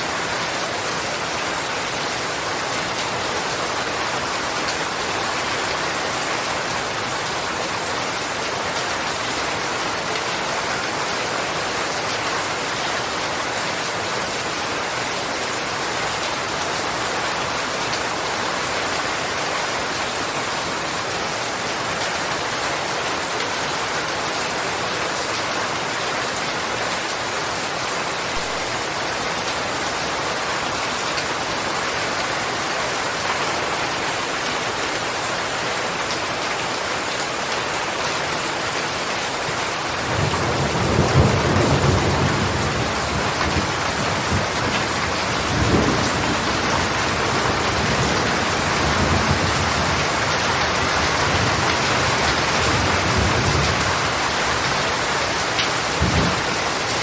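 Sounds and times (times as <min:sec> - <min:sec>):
steady rain falling: 0:00.0 - 0:57.0
thunder rumbling: 0:40.1 - 0:54.2.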